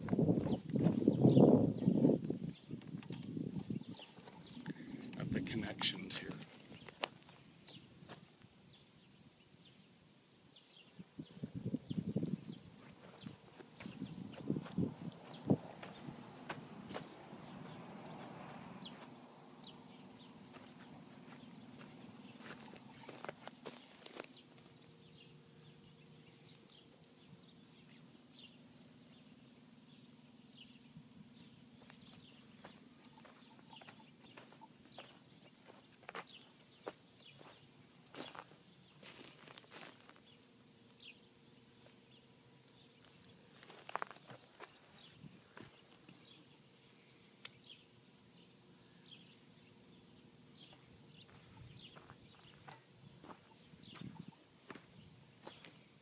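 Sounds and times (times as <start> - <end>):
low steady hum: 0.0 - 56.0
faint bird chirps: 0.4 - 5.0, 16.9 - 39.3, 48.7 - 54.8.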